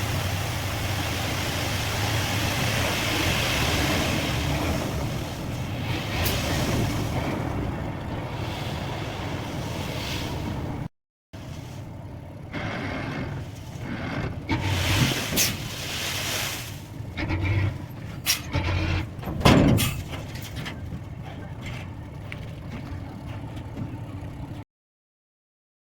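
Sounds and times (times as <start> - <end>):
dump truck running: 0.0 - 24.6
sand pouring hiss: 14.8 - 16.8.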